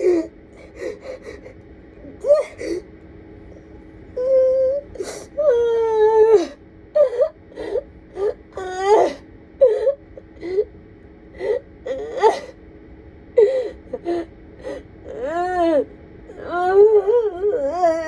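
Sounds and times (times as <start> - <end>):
woman wailing: 0.0 - 2.8, 4.2 - 10.0, 15.1 - 18.0
woman sobbing: 0.0 - 2.9, 4.2 - 10.7, 11.4 - 12.6, 13.4 - 18.0.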